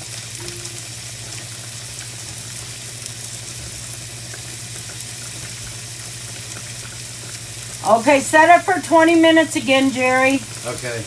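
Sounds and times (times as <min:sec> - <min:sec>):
small crackles: 0:00.0 - 0:08.8
low steady hum: 0:00.0 - 0:11.0
steaks sizzling on a grill: 0:00.0 - 0:11.0.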